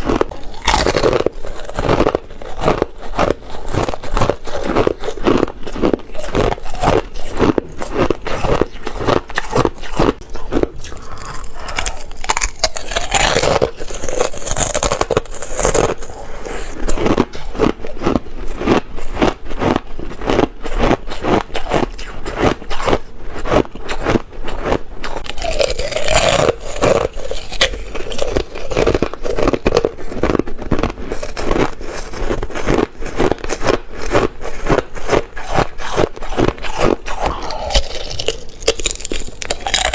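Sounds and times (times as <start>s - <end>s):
ice being chewed with crunches: 0.0s - 39.9s.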